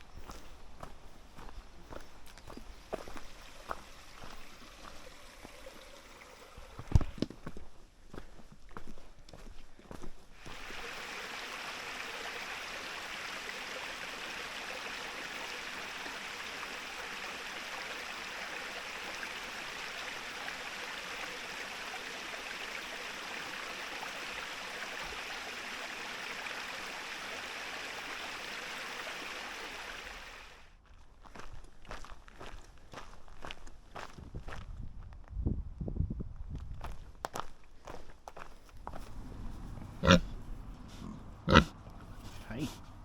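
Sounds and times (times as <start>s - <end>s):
stream water rushing: 0.0s - 7.2s, 10.4s - 30.7s.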